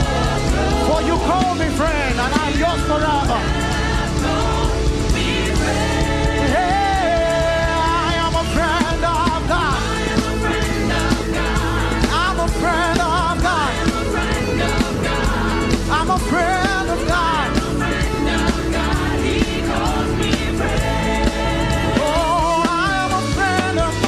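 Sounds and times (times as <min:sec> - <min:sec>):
live band playing: 0:00.0 - 0:24.0.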